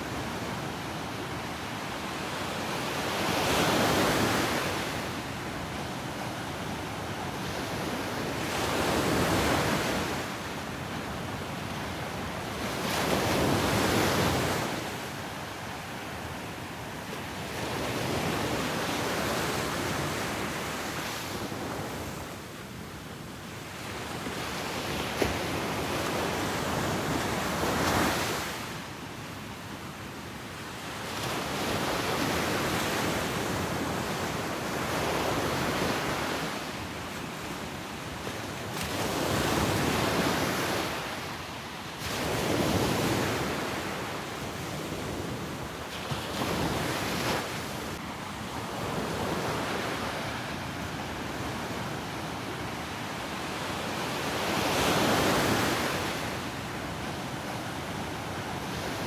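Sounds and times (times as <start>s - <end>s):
wind: 0.0s - 59.0s
ocean waves breaking on beach: 30.7s - 59.0s.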